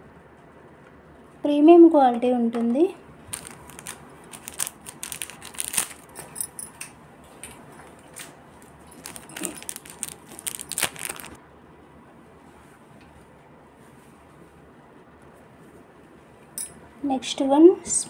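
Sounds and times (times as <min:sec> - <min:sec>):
jewellery clicking and clinking: 0:03.3 - 0:06.9, 0:08.9 - 0:11.4.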